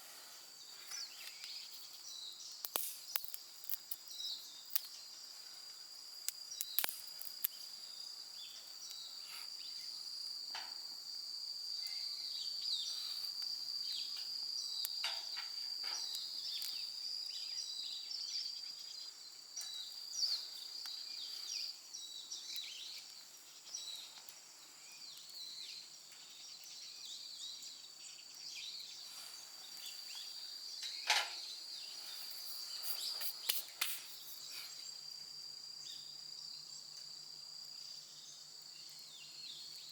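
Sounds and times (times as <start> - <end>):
insects trilling: 0.0 - 39.9
sharp clicks and crackles: 2.6 - 4.1, 4.7 - 5.0, 6.2 - 7.6, 32.3 - 34.4.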